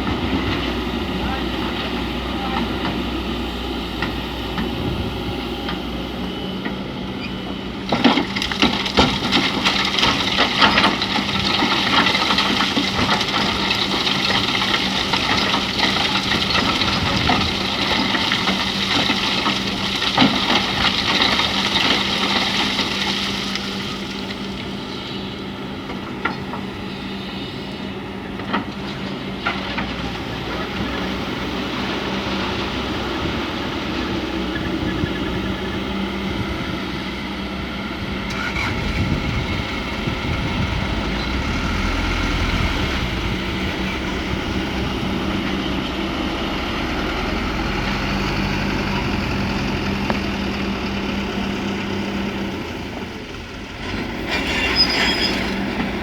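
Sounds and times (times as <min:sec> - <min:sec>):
diesel engine running: 0:00.0 - 0:56.0
sand and stones clattering: 0:08.0 - 0:24.6.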